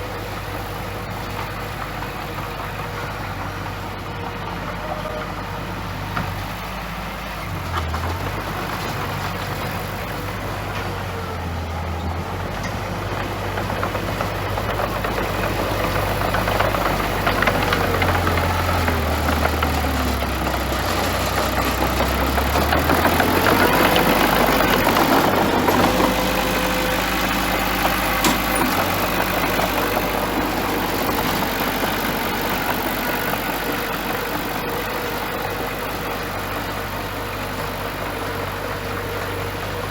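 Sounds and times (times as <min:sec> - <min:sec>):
bulldozer diesel engine: 0:00.0 - 0:39.9.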